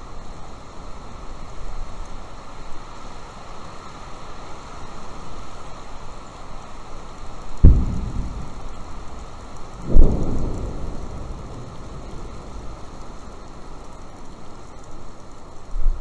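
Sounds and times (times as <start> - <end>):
outdoor rumble: 7.6 - 15.7.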